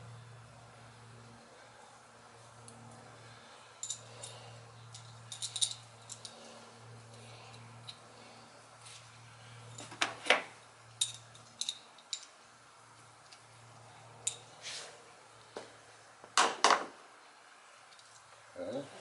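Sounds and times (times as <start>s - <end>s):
metal tools clinking and knocking: 3.8s - 6.4s, 10.9s - 12.4s.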